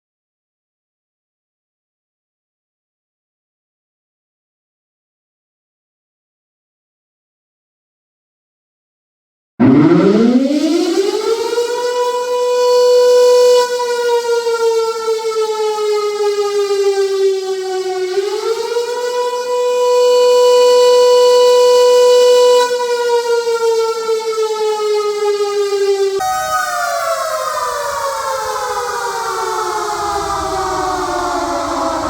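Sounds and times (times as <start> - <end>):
air raid siren wailing: 9.6 - 32.0.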